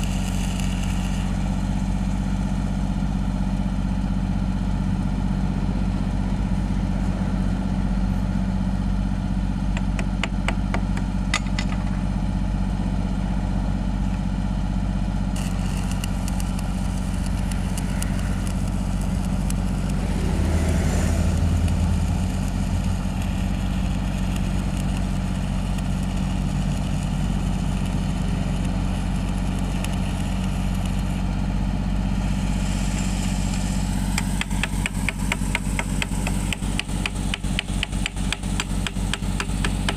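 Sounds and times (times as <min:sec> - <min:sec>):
welding generator engine drone: 0:00.0 - 0:39.9
rapid clicking: 0:15.4 - 0:20.6, 0:21.2 - 0:31.1, 0:33.9 - 0:39.9
crackling hiss: 0:15.4 - 0:31.3.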